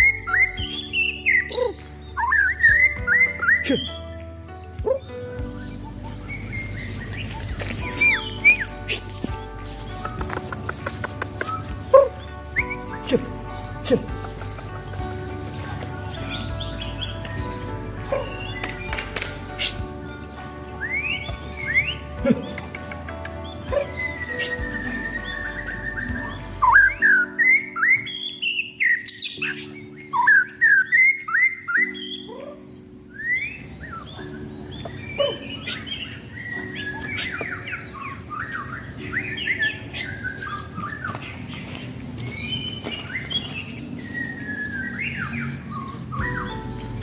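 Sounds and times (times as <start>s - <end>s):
songbird whistling: 0.0s - 4.0s, 23.8s - 32.5s, 42.3s - 47.0s.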